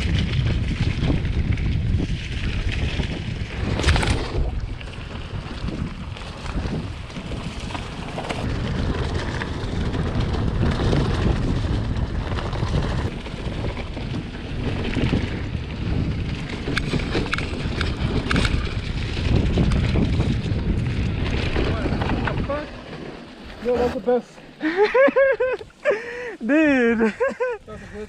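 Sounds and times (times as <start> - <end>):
bike tyre and trail noise: 0.0 - 28.0
wind buffeting microphone: 0.0 - 28.0
sharp clicks and rattles: 16.0 - 22.6.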